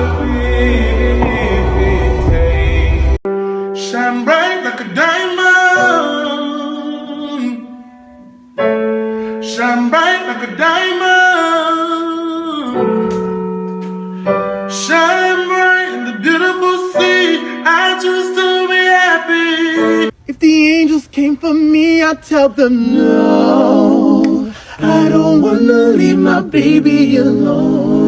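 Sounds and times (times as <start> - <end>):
person singing: 0.0 - 7.8, 14.8 - 28.0
piano accompaniment: 0.0 - 20.3.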